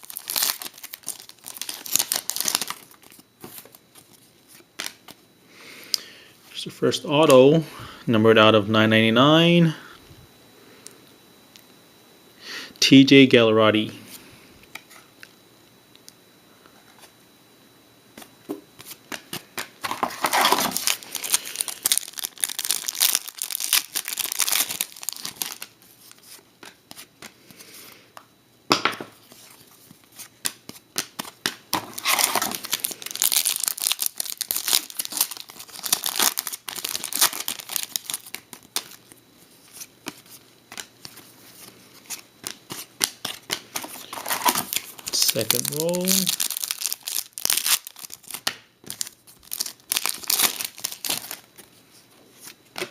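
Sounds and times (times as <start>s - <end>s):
foil wrappers tearing and crinkling: 0.0s - 4.2s, 19.8s - 26.4s, 31.2s - 51.5s.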